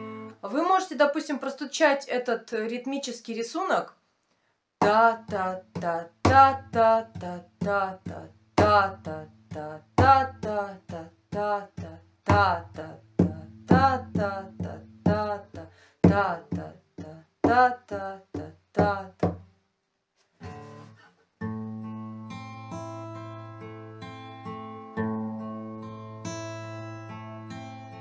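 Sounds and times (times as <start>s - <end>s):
fingerpicked guitar chord: 0.0s - 0.4s, 21.4s - 28.0s.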